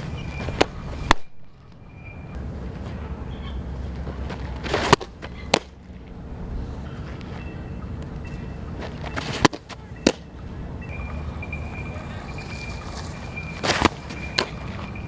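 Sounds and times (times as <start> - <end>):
sharp pops of softball pitches: 0.2 - 1.8, 2.7 - 6.2, 7.0 - 11.0, 13.6 - 15.0
ball smacking into catcher's mitt: 4.0 - 5.8, 9.2 - 10.2.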